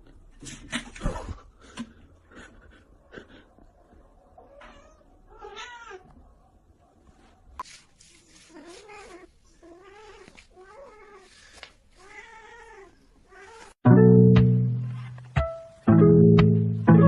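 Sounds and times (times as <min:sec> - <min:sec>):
cat meowing: 0:04.4 - 0:06.1, 0:12.0 - 0:13.8
plucked-string music: 0:13.8 - 0:17.0.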